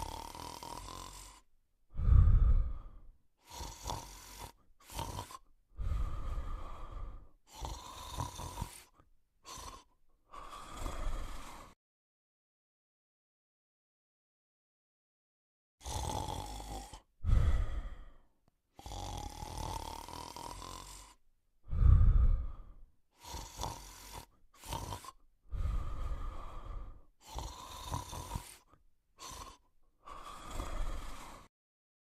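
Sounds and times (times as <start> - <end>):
dog snoring with nasal whistle: 0.0 - 1.4, 3.4 - 5.4, 7.5 - 8.9, 15.8 - 17.0, 18.8 - 21.2, 23.2 - 31.5.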